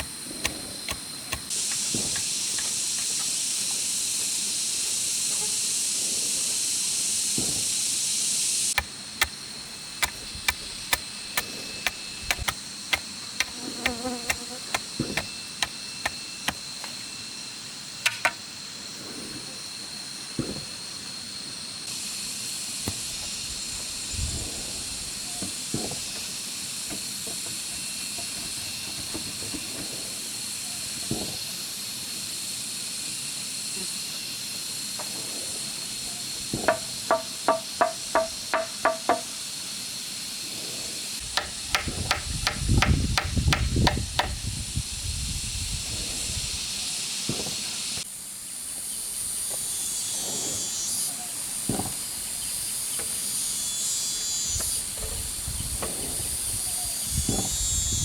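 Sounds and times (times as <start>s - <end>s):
forest insects droning: 0.0s - 58.0s
strikes on bamboo: 41.4s - 44.4s.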